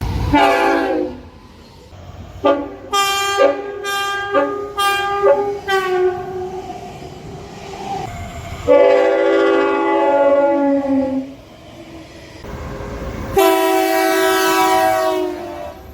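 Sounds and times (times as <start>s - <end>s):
locomotive air horn blasts: 0.3s - 1.2s, 2.4s - 6.3s, 8.7s - 11.3s, 13.4s - 15.9s
train horn long blast: 0.3s - 1.2s, 2.4s - 6.4s, 8.7s - 11.3s, 13.3s - 15.9s.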